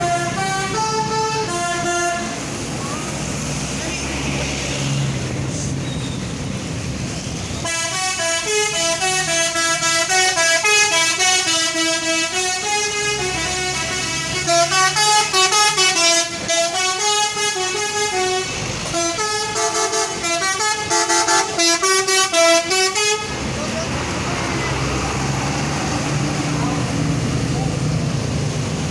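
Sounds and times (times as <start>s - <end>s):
musical bus horn tune: 0.0s - 2.6s, 7.6s - 23.4s.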